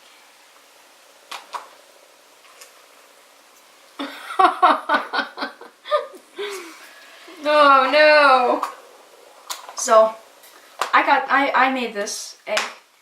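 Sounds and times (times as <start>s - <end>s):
person laughing: 4.0s - 6.8s.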